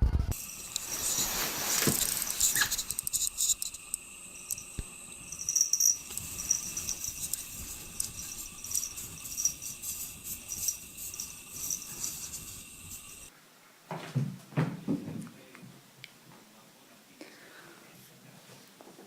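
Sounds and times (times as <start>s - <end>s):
light clicking and ticking: 2.0s - 12.2s.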